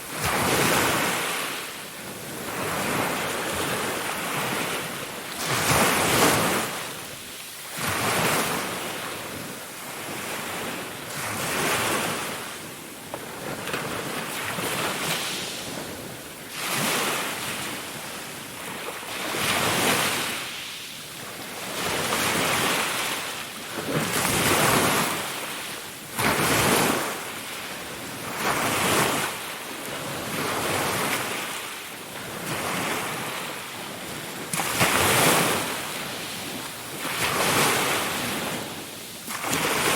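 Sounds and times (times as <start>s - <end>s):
ocean waves breaking: 0.0s - 12.6s, 21.4s - 39.9s.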